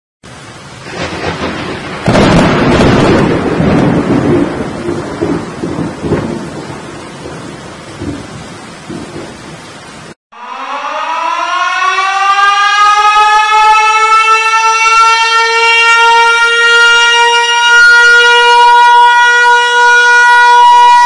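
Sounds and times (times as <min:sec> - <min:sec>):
rain: 0:00.2 - 0:21.0
rolling thunder rumbles: 0:00.6 - 0:10.2
thunderclap: 0:00.8 - 0:10.2
siren rising: 0:10.3 - 0:21.0.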